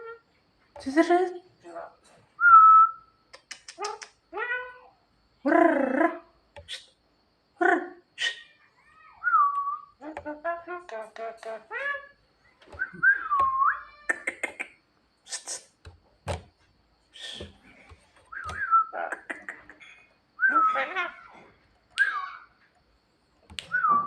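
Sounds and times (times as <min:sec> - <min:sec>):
bird singing whistles and clicks: 0:09.3 - 0:09.9, 0:12.7 - 0:14.7, 0:18.3 - 0:19.4, 0:21.9 - 0:22.3, 0:23.5 - 0:24.0.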